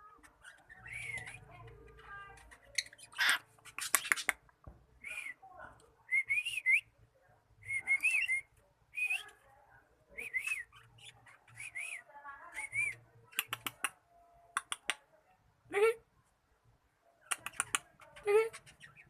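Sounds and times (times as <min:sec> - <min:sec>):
sharp clicks: 0:13.4 - 0:14.0, 0:17.3 - 0:17.9.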